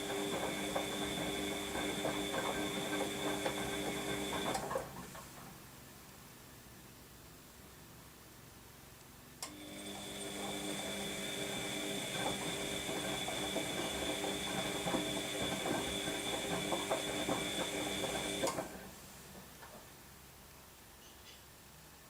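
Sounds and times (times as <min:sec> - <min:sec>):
washing machine motor whine: 0:00.0 - 0:05.1, 0:09.5 - 0:18.9.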